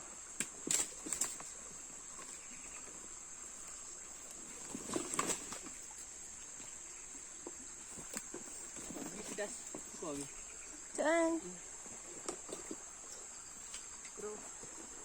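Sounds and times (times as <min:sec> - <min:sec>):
insects droning: 0:00.0 - 0:15.0
knocks and rustles: 0:04.2 - 0:06.8.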